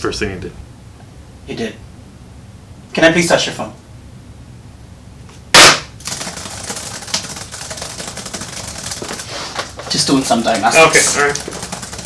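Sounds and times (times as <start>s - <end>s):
rapid typing on computer keyboard: 6.0s - 12.0s.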